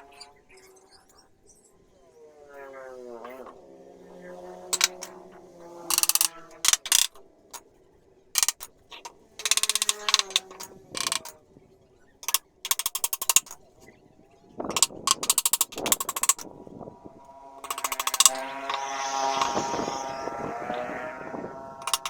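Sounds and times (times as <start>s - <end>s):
rapid mechanical rattling: 4.6s - 5.2s, 5.9s - 7.6s, 8.4s - 11.4s, 12.2s - 13.7s, 14.6s - 22.0s.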